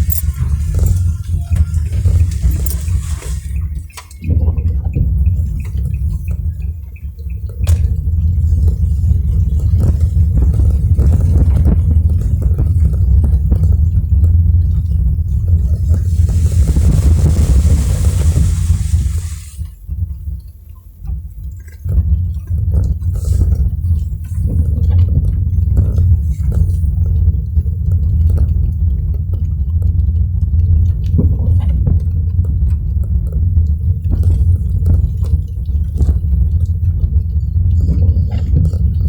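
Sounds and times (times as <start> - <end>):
road rumble in car: 0.0 - 20.2, 21.1 - 39.0
water spray hiss: 15.8 - 19.7
raindrops tapping: 21.3 - 39.0.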